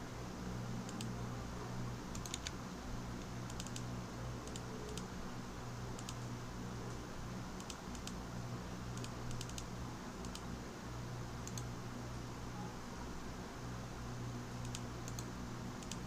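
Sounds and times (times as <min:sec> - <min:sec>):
low electrical hum: 0:00.0 - 0:16.0
computer keyboard clicking: 0:02.1 - 0:02.6, 0:03.2 - 0:05.1, 0:06.0 - 0:06.3, 0:07.6 - 0:08.2, 0:09.0 - 0:10.5, 0:11.4 - 0:11.7, 0:14.6 - 0:16.0.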